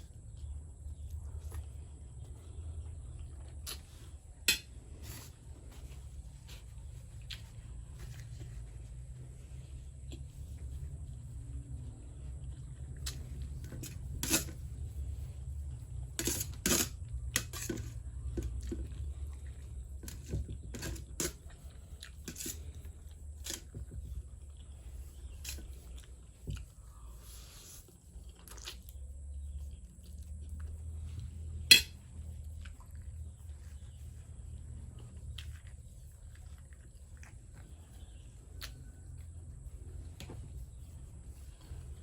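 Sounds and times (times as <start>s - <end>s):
steady low hum: 0.0s - 42.0s
person chewing noodles: 28.2s - 30.8s, 32.3s - 33.9s, 34.5s - 39.2s.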